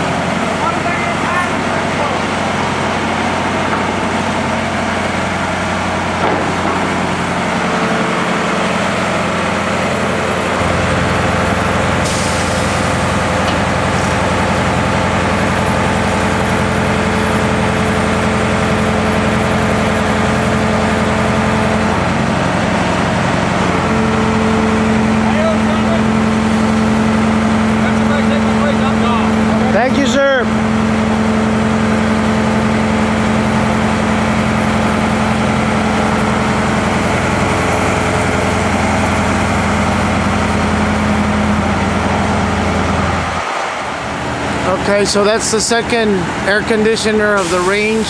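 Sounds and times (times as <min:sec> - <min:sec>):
crane engine running: 0:00.0 - 0:48.0
short hiss of air: 0:12.0 - 0:13.0.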